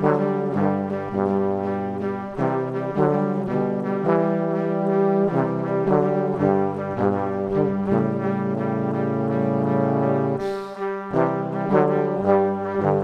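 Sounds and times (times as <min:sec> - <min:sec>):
brass ensemble chords: 0:00.0 - 0:13.0.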